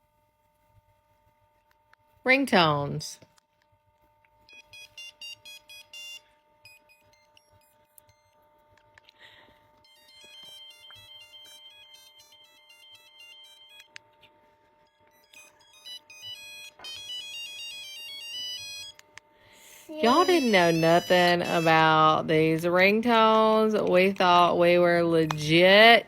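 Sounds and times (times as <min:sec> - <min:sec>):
monophonic phone ringtone beeps: 0:04.5 - 0:08.4, 0:09.8 - 0:14.0, 0:14.8 - 0:19.0, 0:20.0 - 0:22.1.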